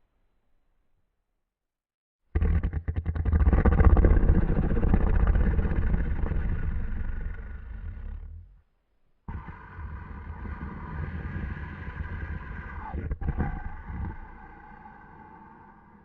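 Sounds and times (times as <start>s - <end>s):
toy rumbling snore: 2.4s - 8.6s, 9.3s - 14.8s.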